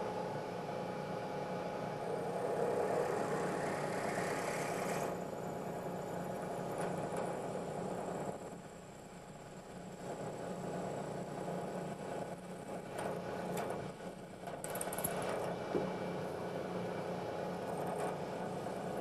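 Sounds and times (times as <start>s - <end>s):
milling machine spindle humming: 2.0s - 5.8s.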